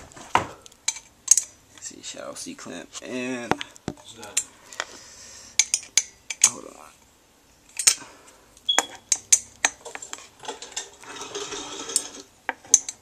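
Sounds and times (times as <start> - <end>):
metal rattling and scraping: 9.8 - 12.8.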